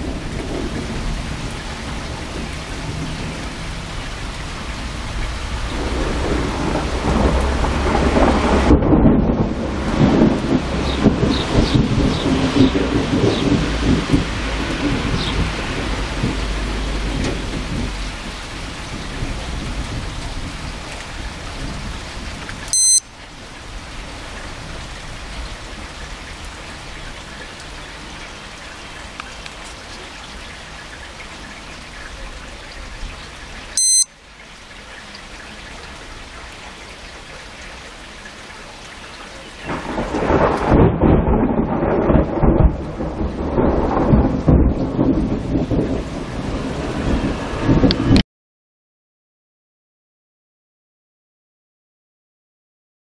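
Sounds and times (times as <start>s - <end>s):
rolling thunder: 0.0s - 22.4s, 39.6s - 48.2s
steady rain: 0.0s - 48.2s
short electronic beep: 22.7s - 23.0s, 33.8s - 34.1s.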